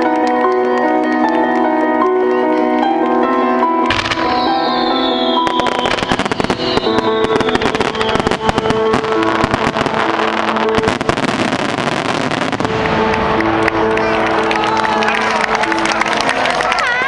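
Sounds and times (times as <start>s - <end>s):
music playing: 0.0s - 17.0s
fireworks bursting and crackling: 3.8s - 14.4s.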